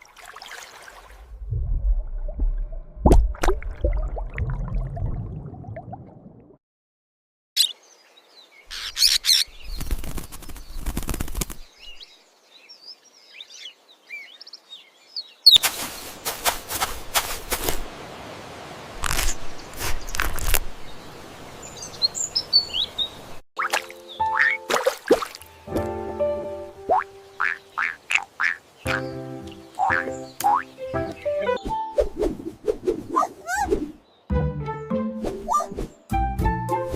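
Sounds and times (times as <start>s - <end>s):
birds chirping: 7.6s - 16.3s, 19.3s - 24.8s, 25.4s - 31.9s
wing flapping: 9.3s - 12.0s, 15.5s - 17.9s.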